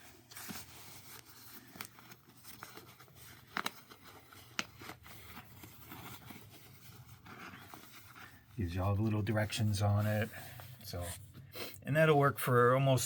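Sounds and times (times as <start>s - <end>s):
soft rustling handling noise: 0.0s - 13.0s.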